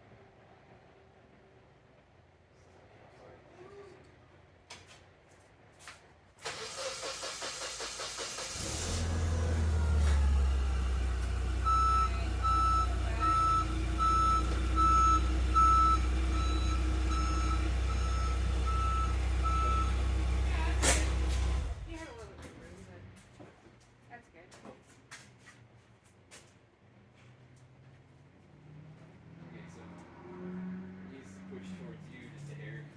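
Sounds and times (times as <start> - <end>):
car engine cranking and running: 6.4 - 22.7.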